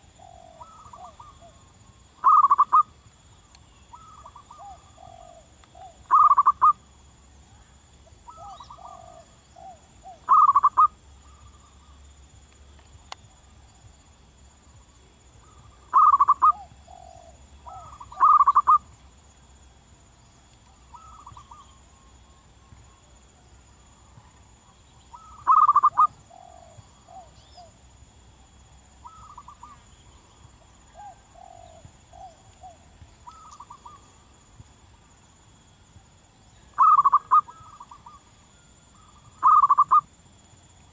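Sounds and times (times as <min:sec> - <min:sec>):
doves cooing: 0:00.0 - 0:01.6, 0:02.2 - 0:02.8, 0:03.9 - 0:06.7, 0:08.3 - 0:11.5, 0:15.4 - 0:18.8, 0:25.1 - 0:27.7, 0:30.9 - 0:34.0, 0:36.8 - 0:38.2, 0:39.2 - 0:40.0.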